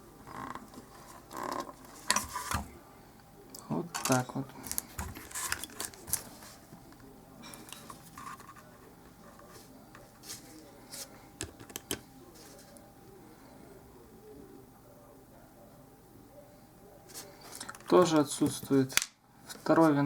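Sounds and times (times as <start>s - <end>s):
light scratching: 7.8s - 11.2s.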